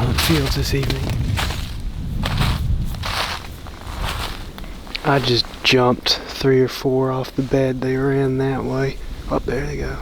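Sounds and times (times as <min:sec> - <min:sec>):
footsteps in snow: 0:00.0 - 0:06.3
wind rumble on microphone: 0:00.0 - 0:06.3, 0:07.5 - 0:10.0.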